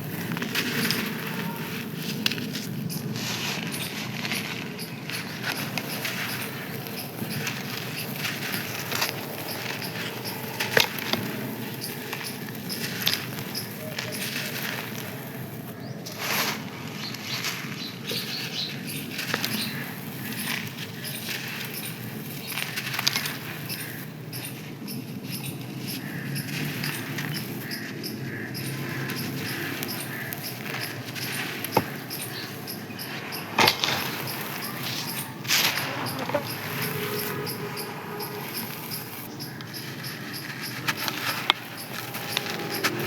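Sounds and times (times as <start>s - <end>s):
dried sand crunching: 0.0s - 43.0s.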